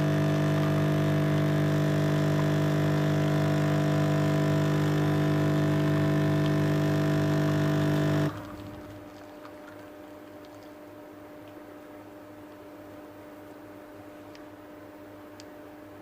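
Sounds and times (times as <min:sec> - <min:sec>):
coffee machine pump buzzing: 0:00.0 - 0:09.0.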